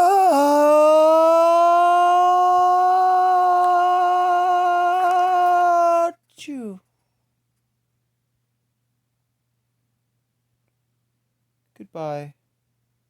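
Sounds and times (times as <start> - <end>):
person holding long high ahhh: 0.0 - 6.1.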